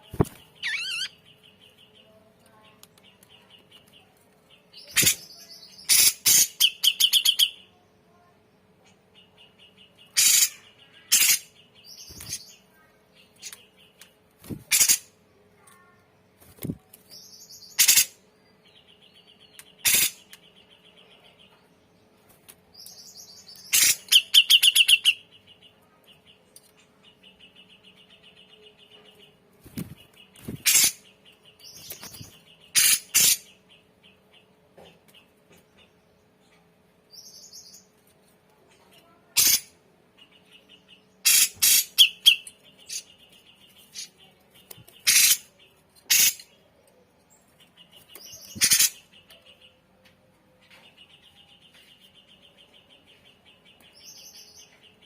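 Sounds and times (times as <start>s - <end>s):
bird singing: 0.0s - 7.8s, 22.7s - 37.9s, 38.7s - 55.0s.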